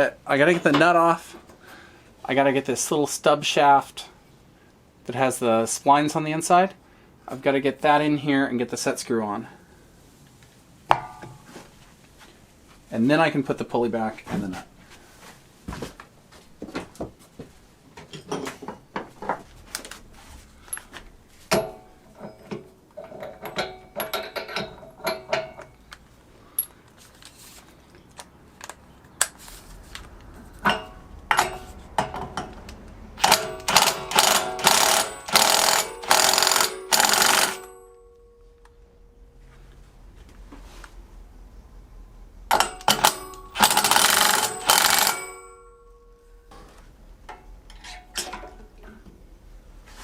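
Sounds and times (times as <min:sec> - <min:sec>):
hand tools clicking and knocking: 0:20.7 - 0:26.0, 0:30.6 - 0:38.7, 0:42.5 - 0:46.6, 0:47.3 - 0:49.2
impact driver hammering: 0:33.2 - 0:37.7, 0:42.5 - 0:45.4.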